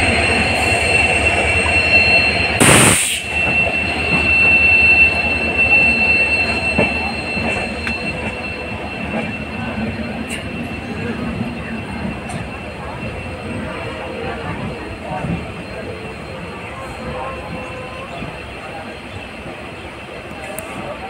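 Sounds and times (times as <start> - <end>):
rolling train rumble: 0.0 - 21.0
train wheels squealing: 0.0 - 21.0
short loud hiss: 2.6 - 3.3.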